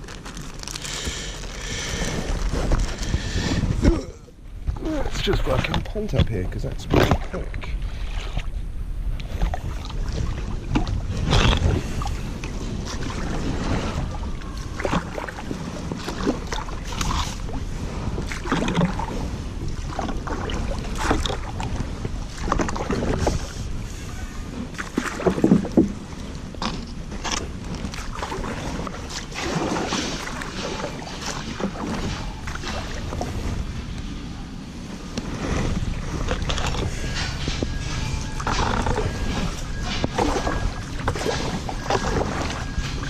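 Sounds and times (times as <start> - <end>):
wind rumble on microphone: 0.0 - 43.0
paddle splashes and knocks: 4.6 - 8.6, 12.4 - 23.6, 24.7 - 33.6, 38.4 - 43.0.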